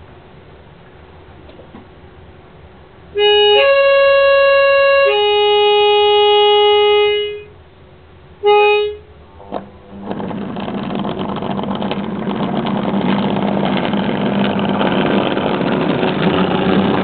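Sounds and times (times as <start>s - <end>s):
harmonica imitating train horn: 3.2s - 7.6s, 8.4s - 10.4s.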